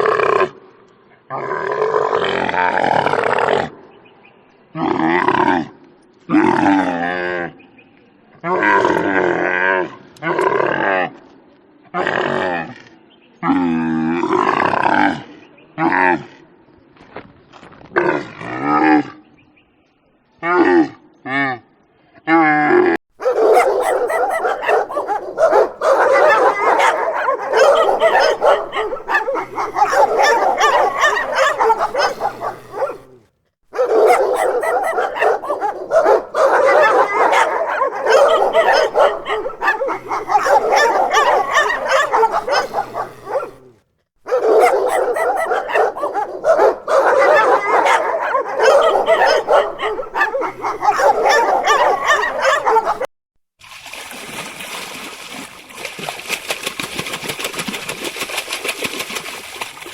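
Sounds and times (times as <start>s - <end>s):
dogs barking and yipping: 23.2s - 43.7s, 44.3s - 53.1s.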